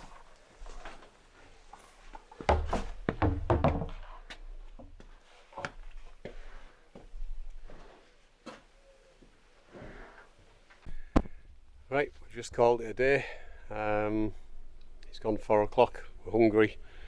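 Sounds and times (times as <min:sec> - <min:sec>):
heavy thuds and knocks: 0:02.5 - 0:04.0.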